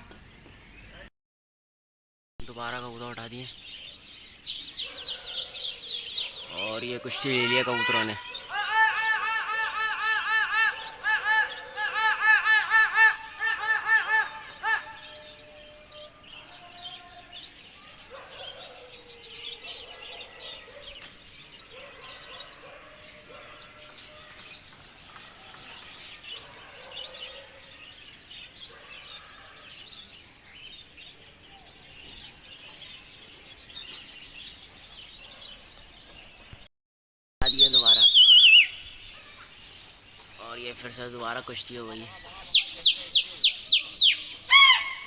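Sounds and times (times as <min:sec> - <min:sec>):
small birds chirping: 0:00.0 - 0:01.1, 0:02.4 - 0:36.7, 0:37.4 - 0:45.0.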